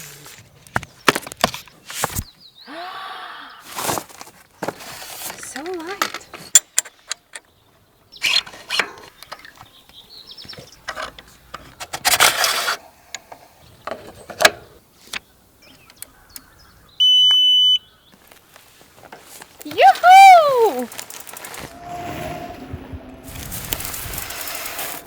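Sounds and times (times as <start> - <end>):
rustling bursts: 18.3 - 25.0.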